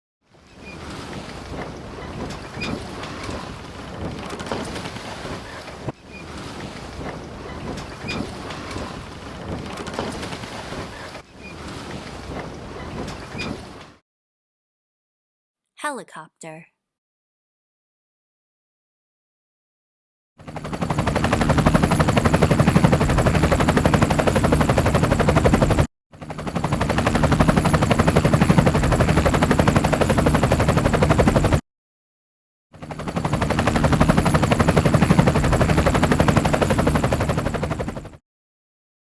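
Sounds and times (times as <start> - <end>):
helicopter rotor blades chopping: 20.4 - 31.6, 32.8 - 38.2.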